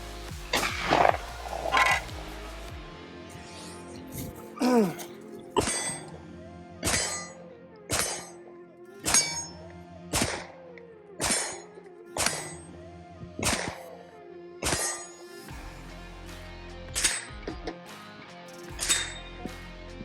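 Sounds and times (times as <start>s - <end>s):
background music: 0.0s - 20.0s
sharp metallic clangs: 5.6s - 6.1s, 6.8s - 8.4s, 9.0s - 10.5s, 11.2s - 12.7s, 13.4s - 13.9s, 14.6s - 15.3s, 17.0s - 17.6s, 18.8s - 19.3s.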